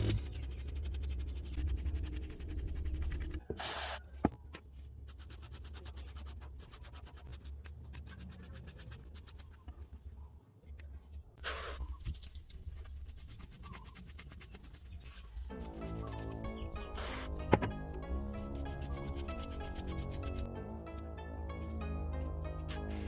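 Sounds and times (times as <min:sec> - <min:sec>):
short hisses of spray: 0:11.4 - 0:11.8.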